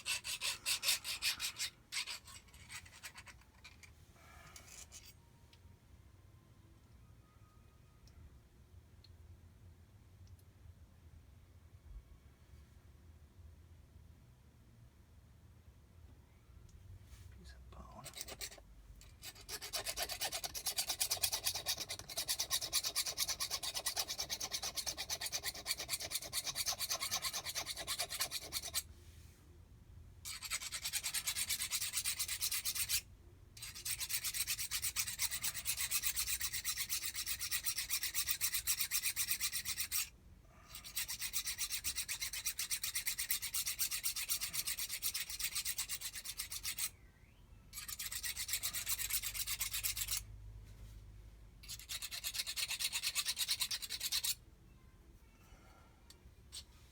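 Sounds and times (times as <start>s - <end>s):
hand file rasping metal: 0.0s - 3.8s, 18.0s - 28.9s, 30.3s - 40.1s, 40.7s - 46.9s, 47.8s - 50.3s, 51.6s - 54.4s.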